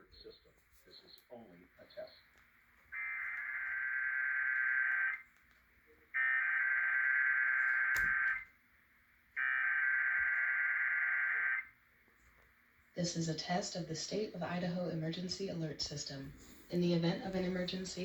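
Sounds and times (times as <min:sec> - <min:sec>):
screeching digital data tones: 0:03.0 - 0:05.2, 0:06.2 - 0:08.4.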